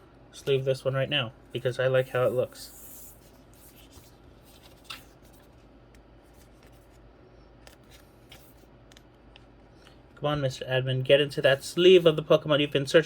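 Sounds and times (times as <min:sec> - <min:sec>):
card sleeve rustling and sliding: 0:03.0 - 0:05.6.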